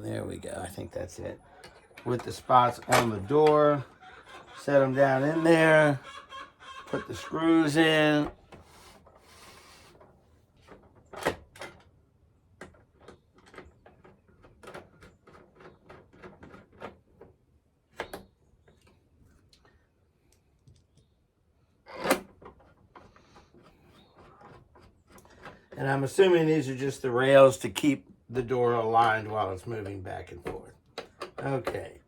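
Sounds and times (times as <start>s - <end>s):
light irregular clicks and taps: 19.5s - 21.1s.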